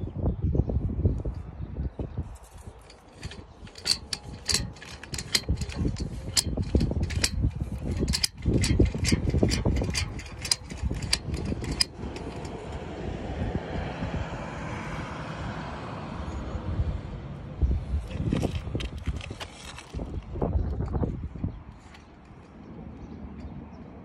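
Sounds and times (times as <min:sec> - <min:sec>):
sharp mechanical clicks: 0:02.9 - 0:12.6.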